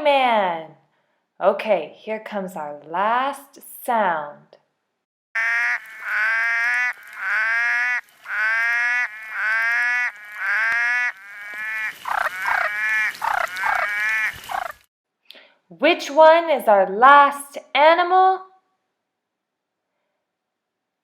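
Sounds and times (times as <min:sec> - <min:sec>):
toucan calling: 0:05.4 - 0:14.8.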